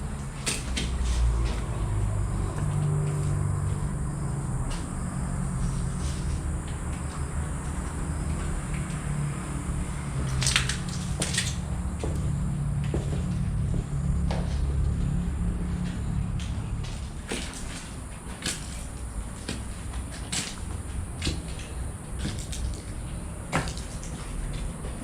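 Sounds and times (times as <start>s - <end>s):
footsteps crunching over debris: 15.9s - 25.0s.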